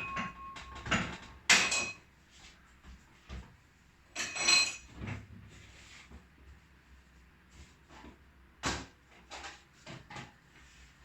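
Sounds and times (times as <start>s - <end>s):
kitchenware knocks and clinks: 0.0s - 2.0s, 4.2s - 5.1s.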